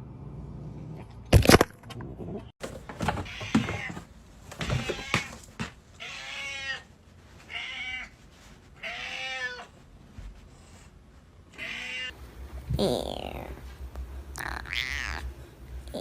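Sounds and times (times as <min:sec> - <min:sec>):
animal crying: 0:14.4 - 0:15.3.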